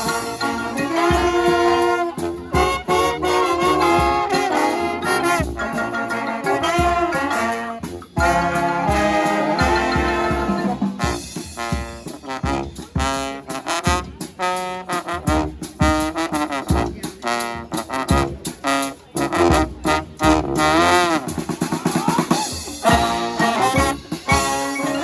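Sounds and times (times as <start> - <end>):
sliding bending horn notes: 0.0 - 12.6
brass band playing: 0.0 - 25.0
drums: 0.0 - 25.0.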